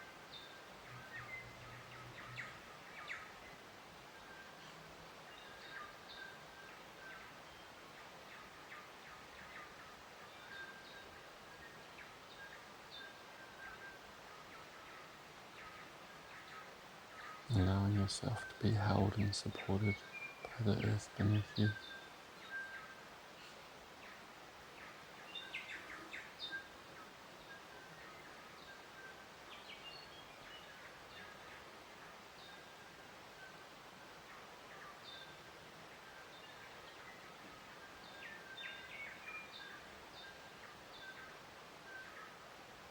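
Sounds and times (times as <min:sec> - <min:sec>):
birds chirping: 0:00.0 - 0:42.9
soft steady hiss: 0:00.0 - 0:42.9
birds chirping and calling: 0:13.1 - 0:24.2.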